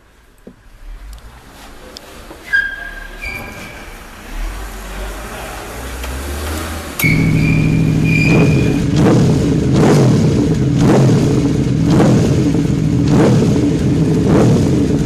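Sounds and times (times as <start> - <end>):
motor scooter engine running: 7.0 - 15.0.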